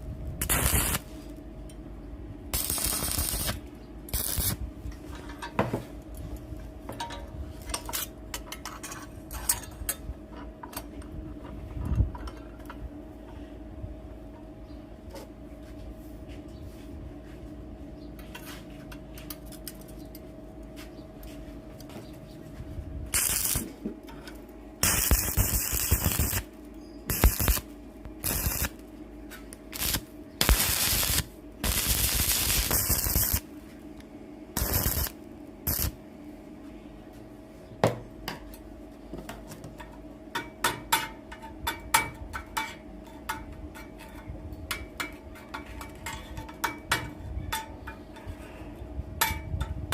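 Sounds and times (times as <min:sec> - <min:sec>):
loud hissing bursts: 0:00.5 - 0:01.0, 0:24.8 - 0:26.4, 0:28.2 - 0:28.7, 0:29.8 - 0:33.4
machine hum: 0:20.0 - 0:39.2.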